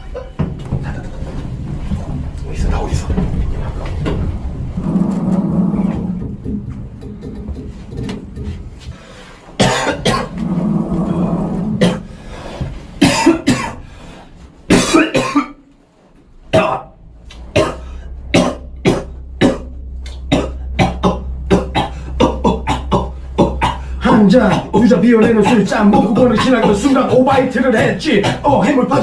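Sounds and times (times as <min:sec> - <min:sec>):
low hum: 0:00.0 - 0:29.0
rhythmic beat of sharp hits: 0:06.0 - 0:10.4, 0:11.8 - 0:13.9, 0:16.6 - 0:29.0
person coughing hard: 0:09.6 - 0:10.4, 0:13.0 - 0:13.8, 0:14.7 - 0:15.6, 0:16.6 - 0:16.9, 0:17.5 - 0:27.2, 0:28.1 - 0:28.8.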